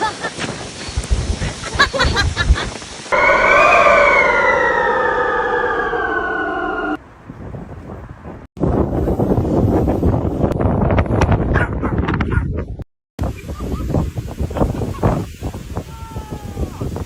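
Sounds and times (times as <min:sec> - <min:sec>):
wind buffeting microphone: 0:01.0 - 0:17.0
dog howling: 0:03.1 - 0:07.0.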